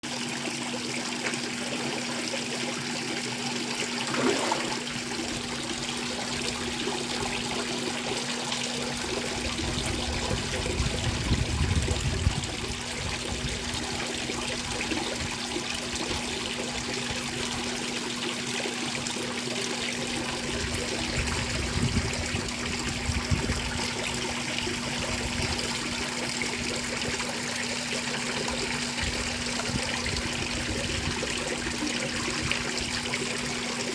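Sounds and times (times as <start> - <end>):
water trickling and dripping: 0.1 - 33.9
wind rumbling on microphone: 9.1 - 14.0, 20.6 - 24.0, 29.0 - 33.0.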